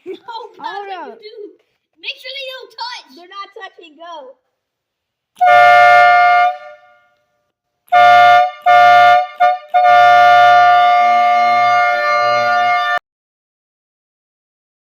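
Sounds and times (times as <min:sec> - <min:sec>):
electric air horn blasting: 0:05.4 - 0:07.2, 0:07.9 - 0:13.0.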